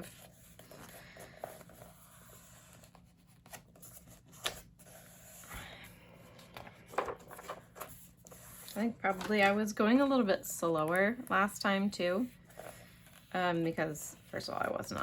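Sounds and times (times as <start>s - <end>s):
book pages rustling: 0.0s - 5.5s, 6.3s - 9.6s.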